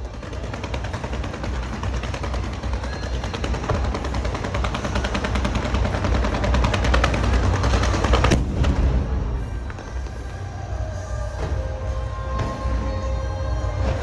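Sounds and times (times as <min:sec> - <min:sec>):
low rumble: 0:03.5 - 0:11.8
fireworks crackling pops: 0:06.5 - 0:10.4.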